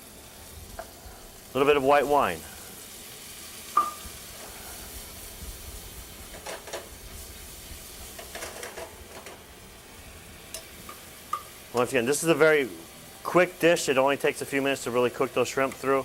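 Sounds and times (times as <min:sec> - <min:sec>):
food sizzling in a pan: 0:00.0 - 0:16.0.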